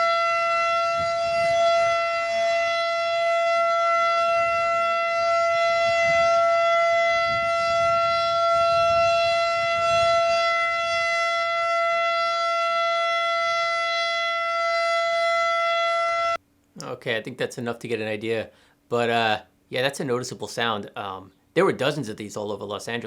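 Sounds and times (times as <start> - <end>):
steady high-pitched warning siren: 0.0 - 16.4.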